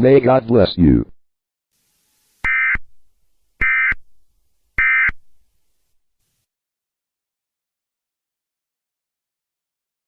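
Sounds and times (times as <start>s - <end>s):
harsh digital tone bursts: 1.8s - 6.4s.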